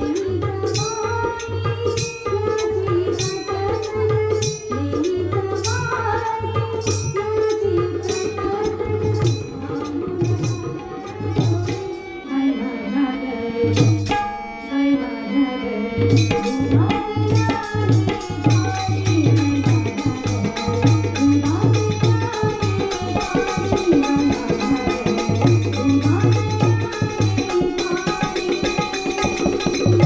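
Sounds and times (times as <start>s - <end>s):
hand drum beats: 16.1s - 30.0s.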